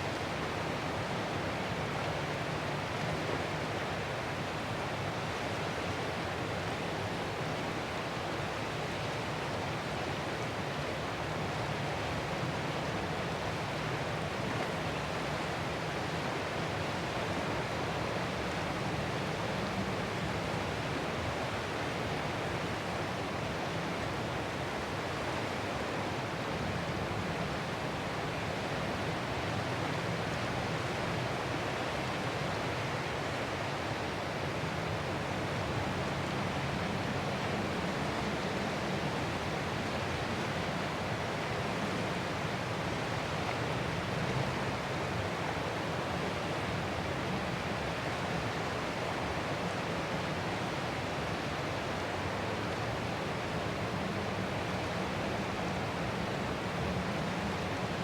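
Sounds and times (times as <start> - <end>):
ocean surf: 34.1 - 58.0.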